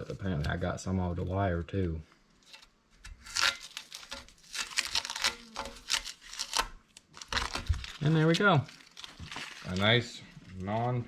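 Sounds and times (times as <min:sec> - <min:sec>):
masking tape peeling and tearing: 0:03.1 - 0:10.1.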